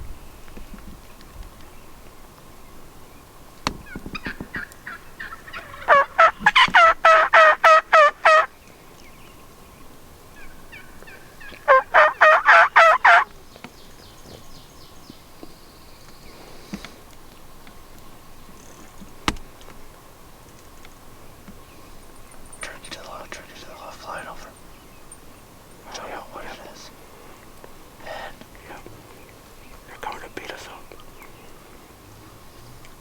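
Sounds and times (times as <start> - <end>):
turkey yelping: 3.8 - 8.5, 10.4 - 13.3.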